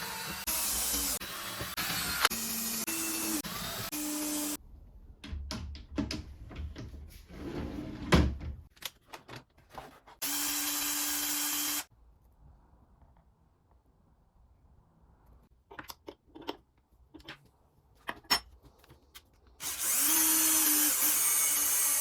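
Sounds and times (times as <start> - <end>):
power tool running: 0.0 - 4.6, 10.2 - 11.9, 19.6 - 22.0.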